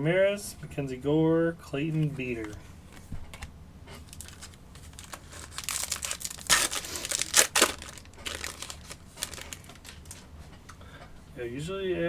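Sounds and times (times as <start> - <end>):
wrapper ripping: 4.0 - 10.2
foil wrapper crinkling: 4.0 - 10.3.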